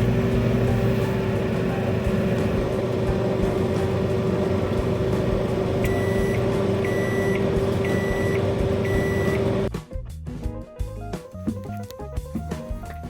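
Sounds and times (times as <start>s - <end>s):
microwave beeping: 0.0s - 9.7s
microwave oven humming: 0.0s - 9.7s.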